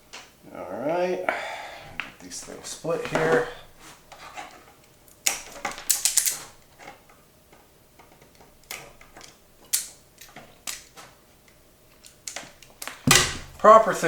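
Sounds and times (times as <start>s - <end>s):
wire strippers clicking and snipping: 4.8s - 13.8s.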